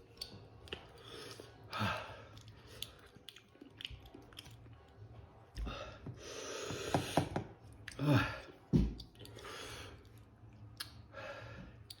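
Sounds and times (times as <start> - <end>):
quiet chewing: 0.0 - 5.8, 7.6 - 11.1, 11.8 - 12.0
wet mouth clicks: 10.8 - 11.0.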